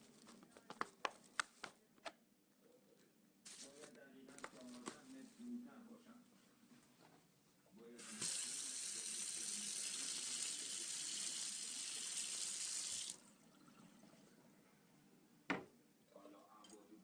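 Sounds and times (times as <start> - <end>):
water running from a tap: 8.0 - 13.2.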